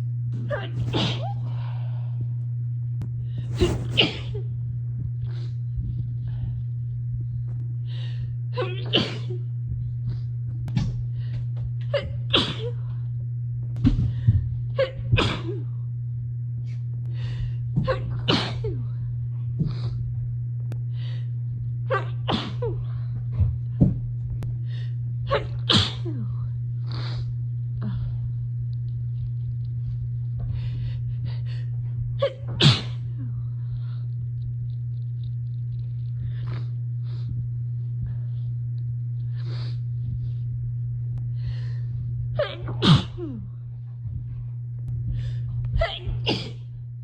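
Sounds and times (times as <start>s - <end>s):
steady low hum: 0.0s - 47.0s
woman sneezing: 0.5s - 1.6s, 3.5s - 4.4s, 8.6s - 9.4s, 11.9s - 12.8s, 14.8s - 15.7s, 17.8s - 18.8s, 21.9s - 22.8s, 25.3s - 26.3s, 32.2s - 33.1s, 42.4s - 43.4s, 45.8s - 46.6s.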